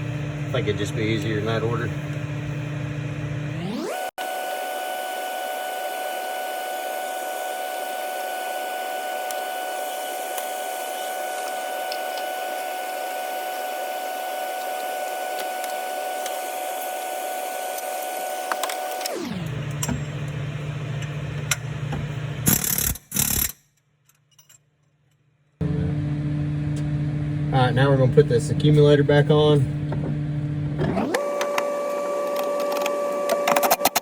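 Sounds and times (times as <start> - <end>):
high machine whine: 0.0 - 23.5.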